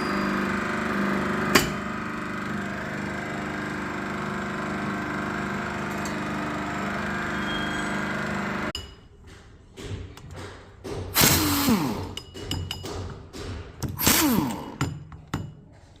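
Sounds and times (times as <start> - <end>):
compressor mechanical drone: 0.0 - 8.8, 11.1 - 12.4, 13.6 - 15.0.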